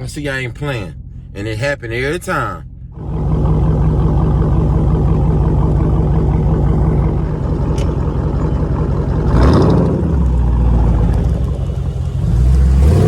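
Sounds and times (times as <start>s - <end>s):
engine exhaust running: 0.0s - 1.4s, 2.3s - 13.0s
sharp exhaust crack: 2.9s - 12.7s.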